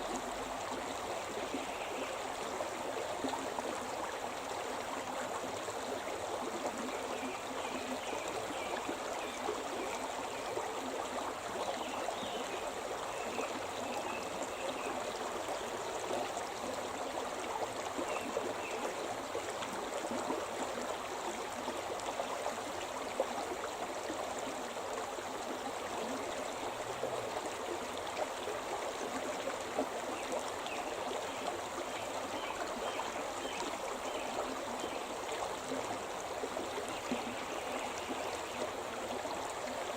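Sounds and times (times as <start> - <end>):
stream water rushing over rocks: 0.0 - 39.9.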